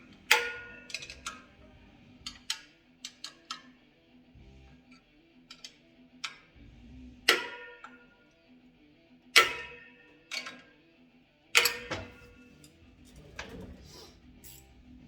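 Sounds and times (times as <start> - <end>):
metallic clicks and clinks: 0.8 - 1.6, 4.8 - 6.6, 11.6 - 15.0.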